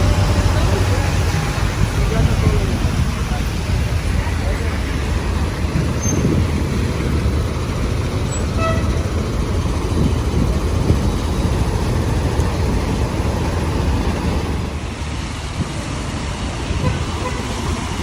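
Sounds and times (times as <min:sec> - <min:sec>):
road traffic noise: 0:00.0 - 0:18.0.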